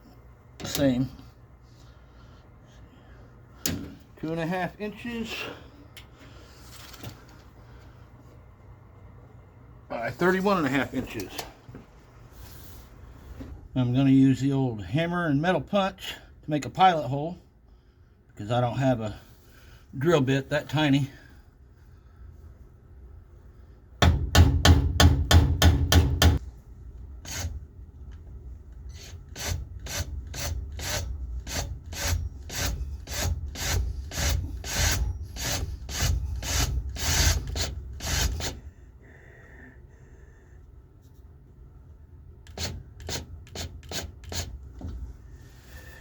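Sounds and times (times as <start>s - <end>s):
hammer striking metal punch: 24.0s - 26.4s.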